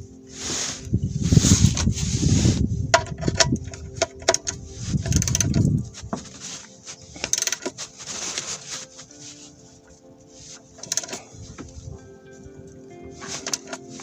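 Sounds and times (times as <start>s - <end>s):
rustling handling noise: 0.1s - 14.0s
metallic clicks and clinks: 3.0s - 5.7s, 7.2s - 7.8s, 10.8s - 11.2s.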